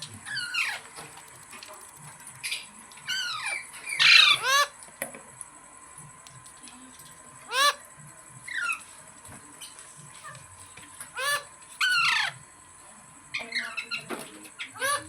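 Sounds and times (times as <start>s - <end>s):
parrot screeching: 0.3s - 0.8s, 3.1s - 4.7s, 7.5s - 7.8s, 11.2s - 12.4s, 14.6s - 15.0s.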